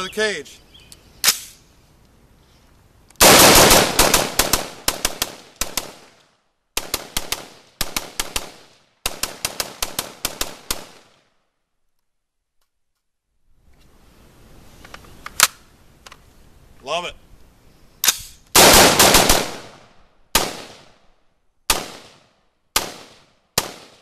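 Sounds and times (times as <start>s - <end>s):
rifle firing rapidly: 3.2s - 6.0s, 6.8s - 11.0s, 18.6s - 19.8s, 20.4s - 20.8s, 22.8s - 24.0s.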